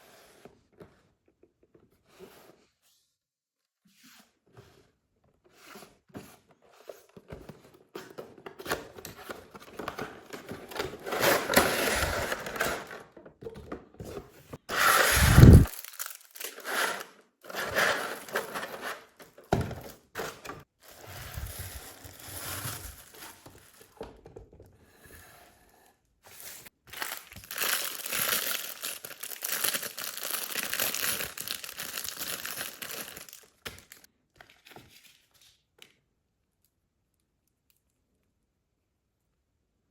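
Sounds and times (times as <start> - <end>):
plastic and paper crinkling: 15.2 - 17.0, 20.9 - 24.0, 26.9 - 35.5.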